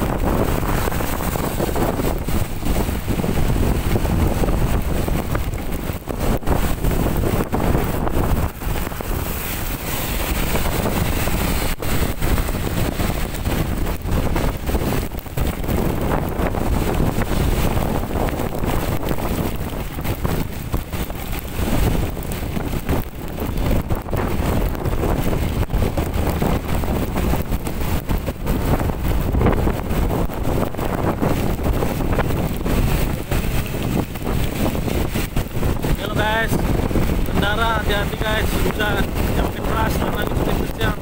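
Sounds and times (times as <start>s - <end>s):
heavy rain hiss: 0.0s - 41.0s
wind buffeting microphone: 0.0s - 41.0s.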